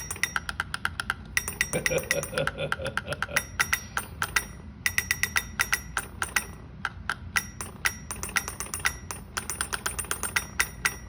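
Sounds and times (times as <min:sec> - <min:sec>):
rapid tapping on hard surface: 0:00.0 - 0:11.0.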